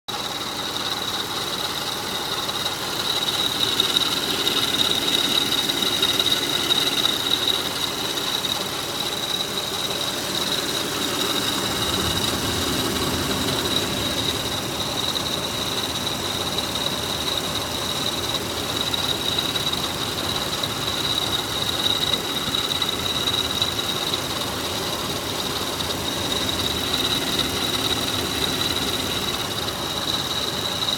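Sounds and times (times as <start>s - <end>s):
car engine running: 0.1s - 30.9s
high-pitched belt whine: 0.1s - 30.9s.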